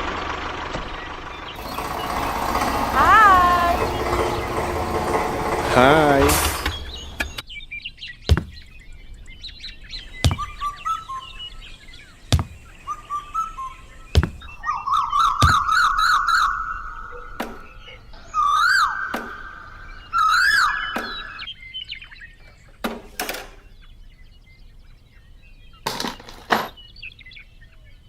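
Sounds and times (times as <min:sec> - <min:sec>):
small birds chirping: 0:00.0 - 0:28.0
sharp knocks: 0:01.6 - 0:07.4, 0:08.3 - 0:08.7, 0:10.2 - 0:10.6, 0:12.3 - 0:12.7, 0:14.2 - 0:14.5, 0:15.4 - 0:15.8.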